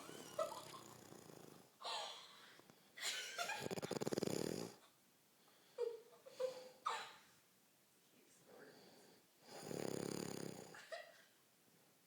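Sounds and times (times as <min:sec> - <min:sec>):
loud rattling snore: 0:00.0 - 0:01.7, 0:03.5 - 0:04.8, 0:09.5 - 0:10.8.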